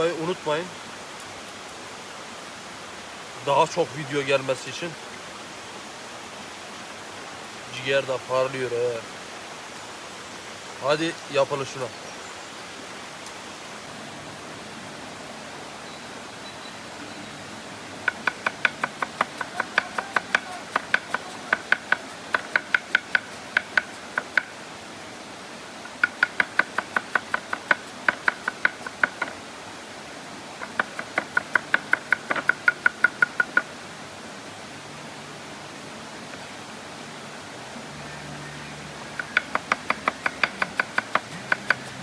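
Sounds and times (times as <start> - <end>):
knife chopping on wooden board: 18.1 - 24.5, 39.3 - 41.8.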